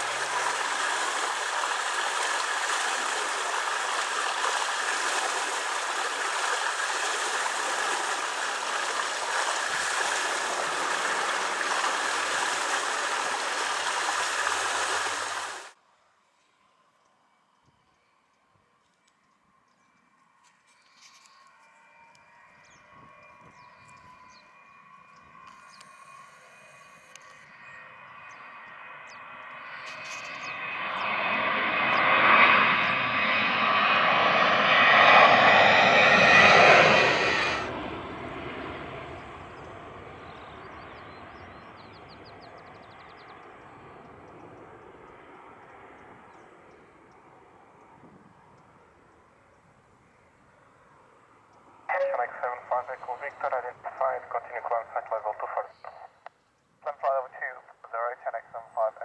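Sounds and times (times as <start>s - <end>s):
jet engines passing low: 0.0s - 59.0s.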